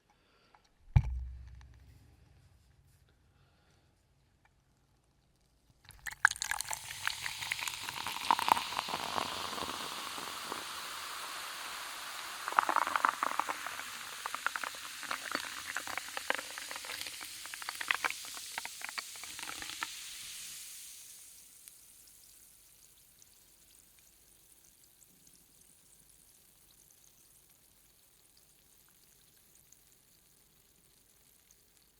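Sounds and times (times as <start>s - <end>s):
soda fizzing over ice: 5.9s - 24.9s.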